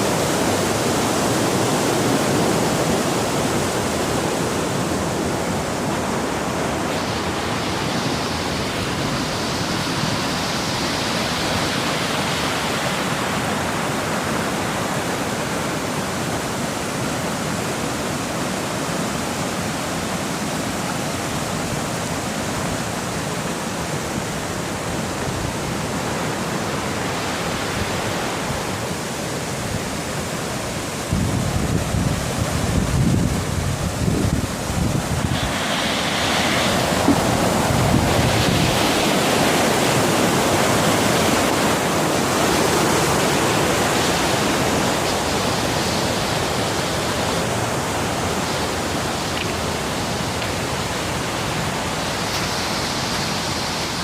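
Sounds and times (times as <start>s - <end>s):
rushing water: 0.0s - 54.0s
wind buffeting the microphone: 24.9s - 54.0s.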